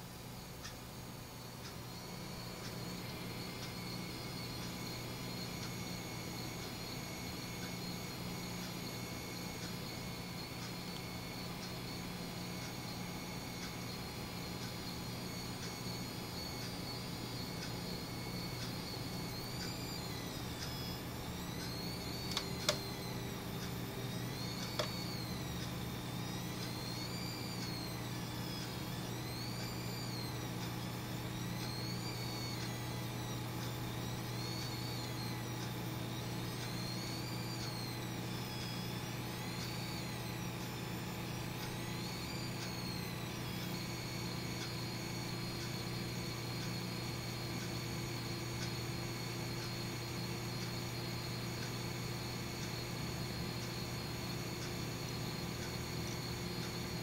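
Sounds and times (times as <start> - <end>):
high-pitched electrical whine: 0.0 - 57.0
sharp clicks: 21.5 - 25.8.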